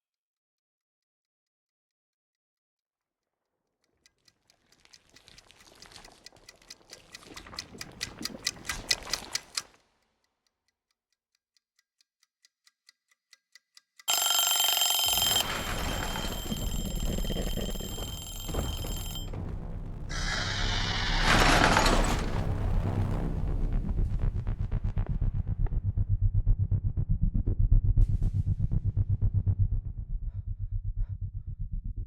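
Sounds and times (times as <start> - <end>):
mechanical timer ticking: 4.1 - 9.7, 11.1 - 19.3
loud ringing alarm: 14.1 - 22.4
deep rumble: 19.3 - 32.0
harsh noisy surge: 20.0 - 24.7.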